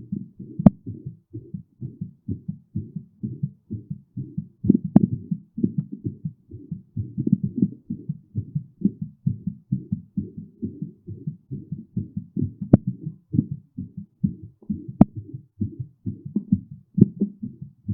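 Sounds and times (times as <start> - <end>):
fast heartbeat: 0.0 - 17.9.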